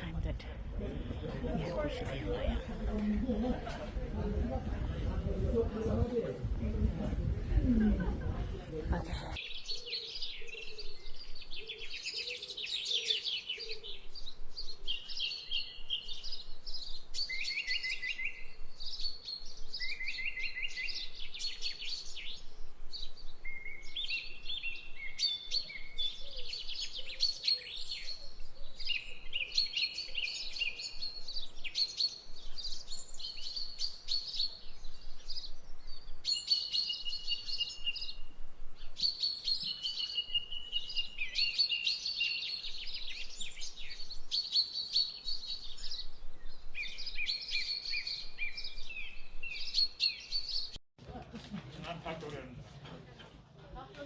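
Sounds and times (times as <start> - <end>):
birds chirping and trilling: 9.3 - 50.8.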